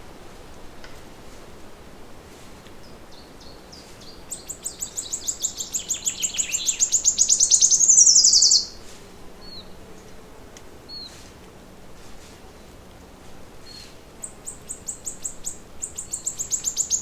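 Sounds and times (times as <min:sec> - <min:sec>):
songbird rapid trill: 0:03.4 - 0:08.8, 0:13.7 - 0:17.0
faint short bird chirps: 0:04.0 - 0:08.8.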